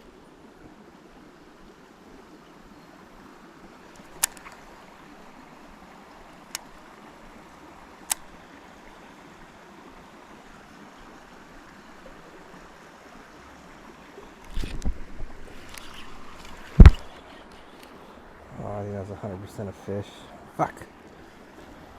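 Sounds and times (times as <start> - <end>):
sharp clicks: 3.9 - 4.7, 8.1 - 8.3.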